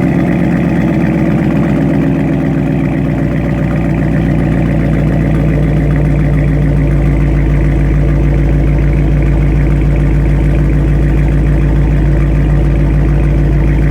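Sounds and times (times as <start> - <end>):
car engine idling: 0.0 - 13.9.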